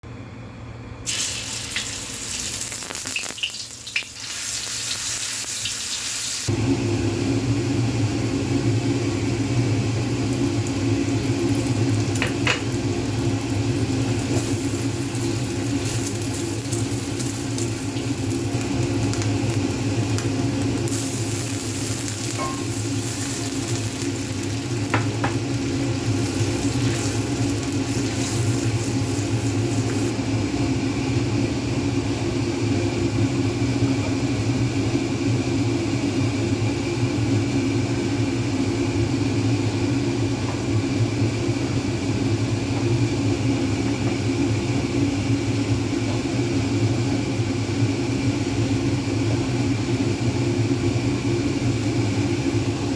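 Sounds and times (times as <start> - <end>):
food sizzling in oil: 1.1 - 6.5, 7.1 - 30.2.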